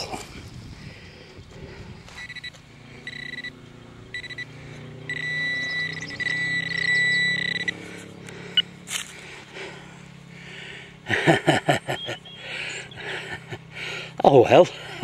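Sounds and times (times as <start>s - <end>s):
metal detector beeps and tone: 2.1s - 7.9s, 11.7s - 13.1s.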